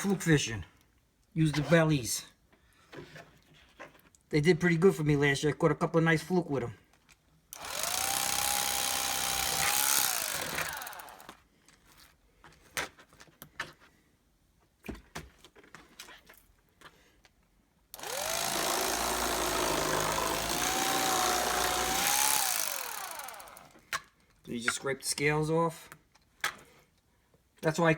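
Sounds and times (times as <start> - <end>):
small electric motor tool whining: 7.6 - 11.4, 18.0 - 23.8.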